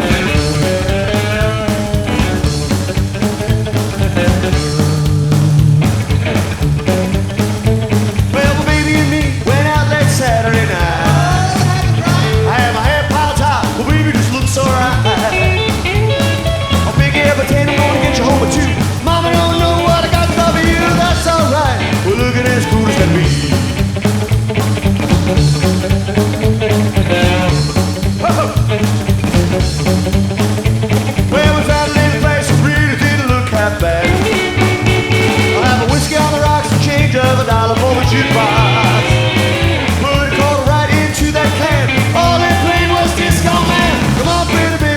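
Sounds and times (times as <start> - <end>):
rock band playing: 0.0 - 44.9
person singing: 8.3 - 23.8, 31.3 - 44.9.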